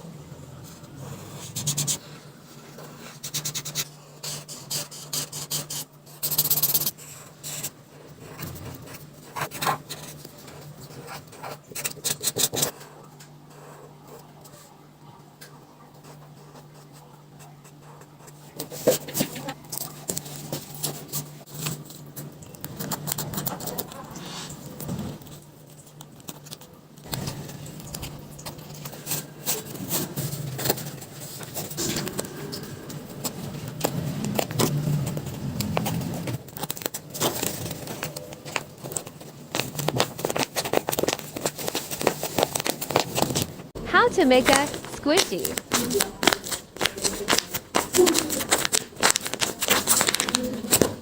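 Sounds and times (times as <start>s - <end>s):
paper rustling and crackling: 18.5s - 51.0s.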